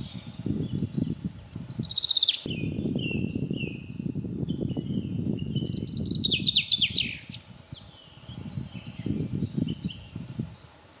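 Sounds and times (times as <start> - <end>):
thin bird chirps: 0.0 - 3.9
birds singing: 0.0 - 11.0.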